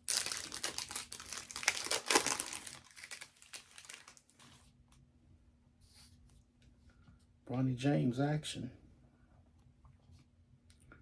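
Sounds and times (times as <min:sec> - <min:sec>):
foil wrapper crinkling: 0:00.0 - 0:04.6.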